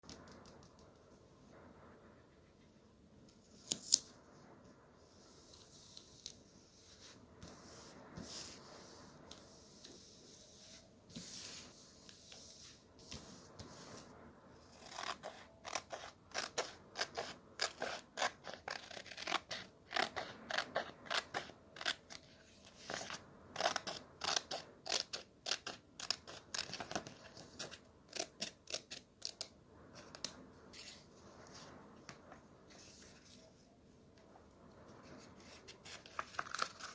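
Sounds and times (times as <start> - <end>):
paper rustling: 35.0 - 36.9.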